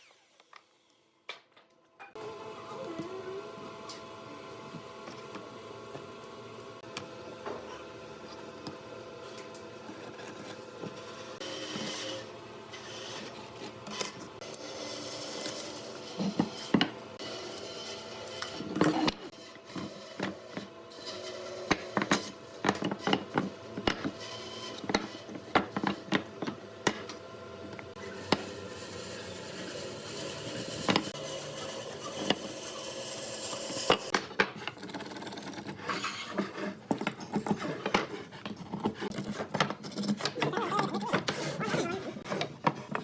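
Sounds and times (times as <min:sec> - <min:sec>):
wood rubbing and scraping: 0:33.9 - 0:43.0.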